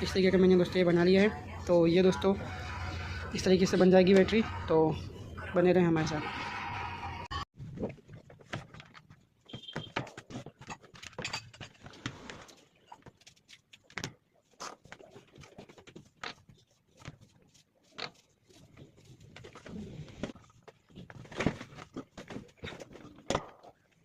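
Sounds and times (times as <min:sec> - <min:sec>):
objects being handled: 0:07.6 - 0:24.0.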